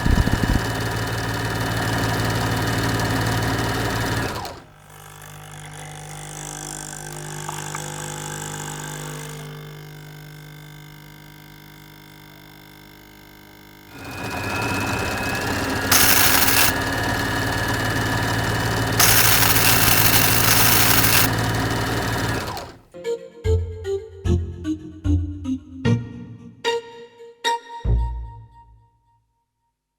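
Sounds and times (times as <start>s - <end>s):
motor-like whir with whine: 0.0s - 0.9s, 6.5s - 22.8s
steady machine hum: 13.9s - 22.8s.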